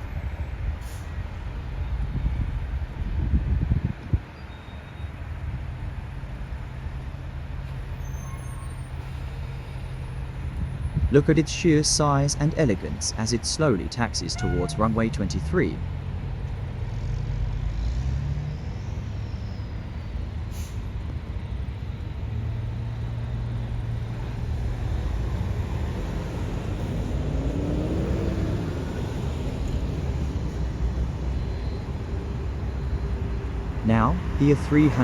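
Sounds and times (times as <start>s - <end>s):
jet engines rumbling: 18.6s - 35.0s.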